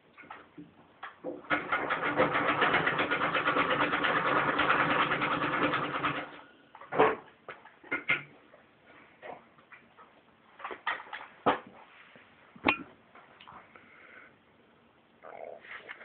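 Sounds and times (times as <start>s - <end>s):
treadle sewing machine stitching: 1.4s - 6.4s.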